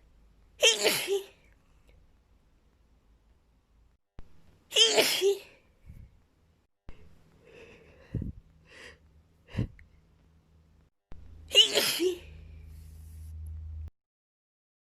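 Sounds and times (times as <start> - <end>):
woman sneezing: 0.6 - 1.4, 4.7 - 5.6, 11.5 - 12.3
short breathy sounds: 6.9 - 10.0.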